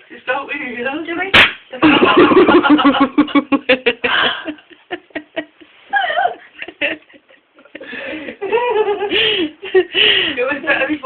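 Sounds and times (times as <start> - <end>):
people laughing hard: 1.8 - 5.6, 6.2 - 9.8.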